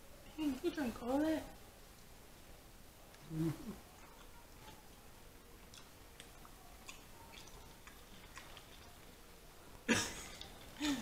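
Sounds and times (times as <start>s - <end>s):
quiet chewing: 3.1s - 11.0s
faint eating clicks: 5.6s - 9.2s.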